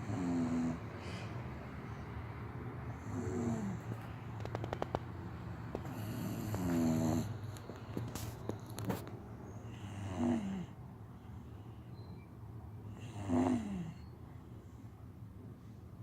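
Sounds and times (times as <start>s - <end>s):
dog snoring: 0.0s - 0.8s, 2.9s - 4.9s, 5.7s - 8.4s, 9.6s - 10.8s, 12.9s - 14.1s.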